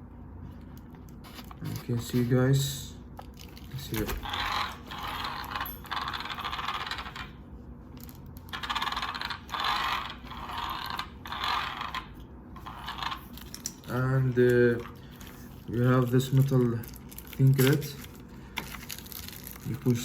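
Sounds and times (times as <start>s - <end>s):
rapid mechanical ratchet clicking: 4.0s - 7.4s, 8.4s - 14.1s.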